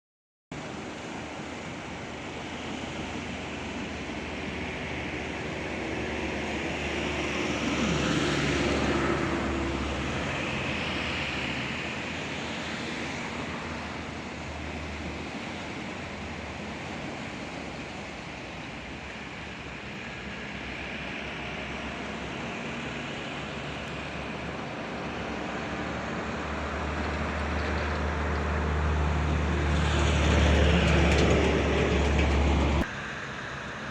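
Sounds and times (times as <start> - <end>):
surf washing on beach: 0.6 - 33.9
passing engine: 2.3 - 33.9.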